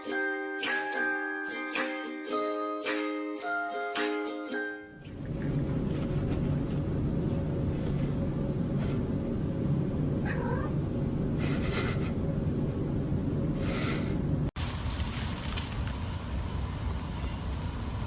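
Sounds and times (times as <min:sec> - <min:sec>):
cat meowing: 0:10.2 - 0:10.8.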